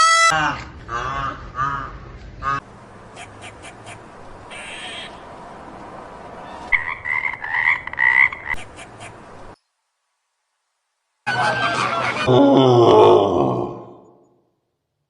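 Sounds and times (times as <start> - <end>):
frog croaking: 6.7 - 8.9.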